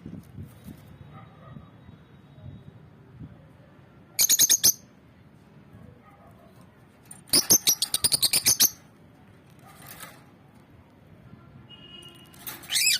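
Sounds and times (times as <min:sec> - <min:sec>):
bird chirping: 0:04.2 - 0:04.8, 0:07.3 - 0:08.8.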